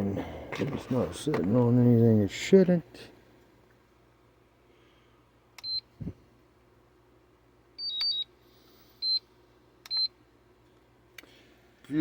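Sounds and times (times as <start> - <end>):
battery charger beeping: 5.6 - 5.9, 7.8 - 8.3, 9.0 - 9.3, 9.9 - 10.2.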